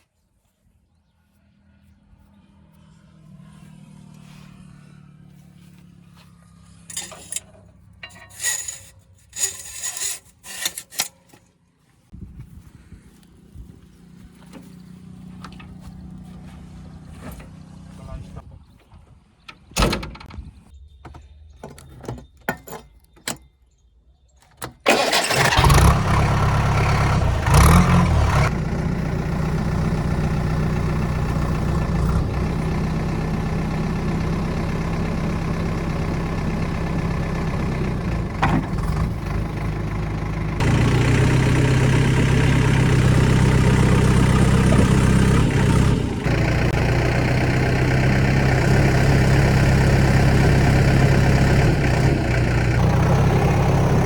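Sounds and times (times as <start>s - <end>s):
diesel engine starting and running: 1.6s - 11.5s, 24.6s - 54.0s.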